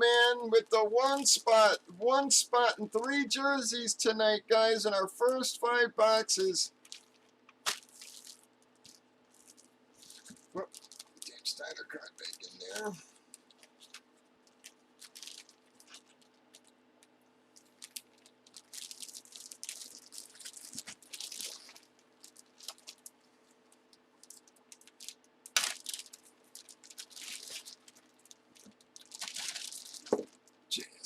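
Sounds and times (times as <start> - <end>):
plastic packaging crinkling: 6.7 - 30.7.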